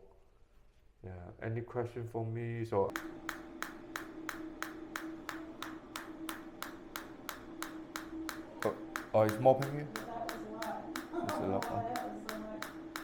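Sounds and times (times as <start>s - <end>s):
steady device hum: 2.8s - 13.0s
sharp pulse clicks: 2.9s - 13.0s.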